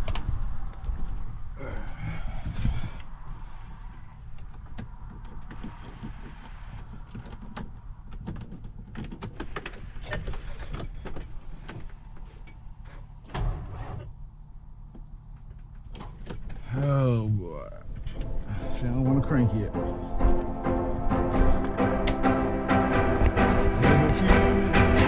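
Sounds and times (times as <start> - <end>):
truck starter clicking: 17.8 - 18.8, 19.9 - 23.4.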